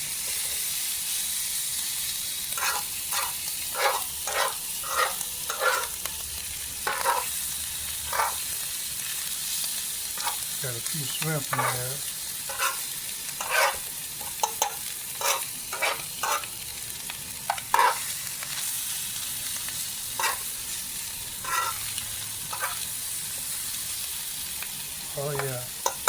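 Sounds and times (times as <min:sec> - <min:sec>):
fried rice sizzling in skillet: 0:00.0 - 0:26.0
utensil scraping and tapping pan: 0:02.6 - 0:05.9, 0:06.9 - 0:07.3, 0:08.1 - 0:08.4, 0:11.2 - 0:11.8, 0:12.5 - 0:12.8, 0:13.4 - 0:16.5, 0:17.5 - 0:18.0, 0:20.2 - 0:20.4, 0:21.4 - 0:21.8, 0:22.5 - 0:22.8, 0:25.3 - 0:26.0.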